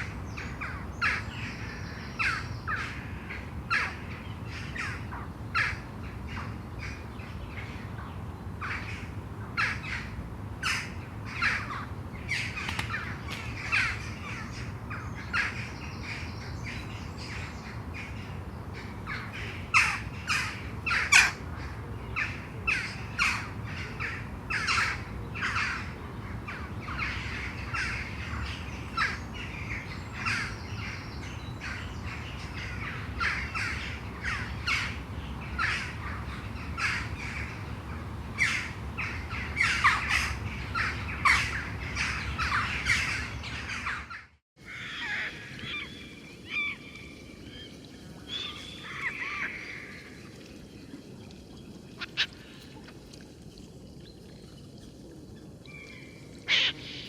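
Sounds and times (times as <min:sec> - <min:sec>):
steady low hum: 0:00.0 - 0:44.0
birds calling: 0:00.0 - 0:53.0, 0:54.0 - 0:57.0.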